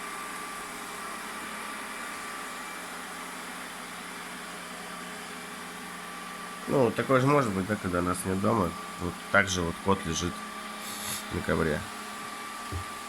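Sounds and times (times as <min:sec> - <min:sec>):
robot vacuum whirring: 0:07.4 - 0:13.0.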